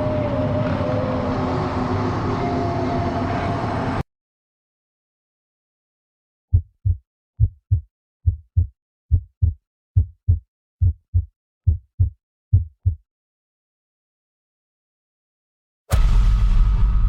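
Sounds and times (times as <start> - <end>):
heartbeat thuds: 6.5 - 13.0.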